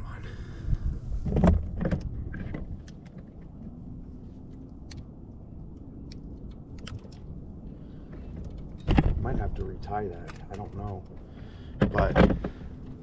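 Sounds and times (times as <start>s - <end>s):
low steady rumble: 0.0s - 13.0s
thumps and handling noises: 11.8s - 12.7s.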